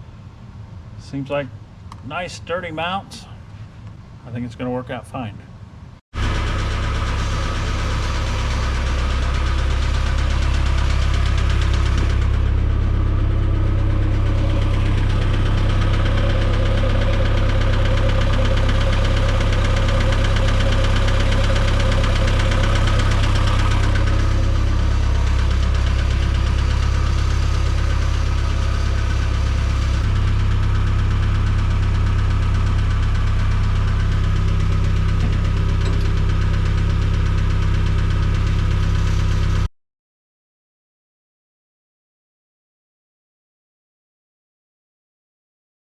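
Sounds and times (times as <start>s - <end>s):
diesel engine idling: 5.6s - 39.7s.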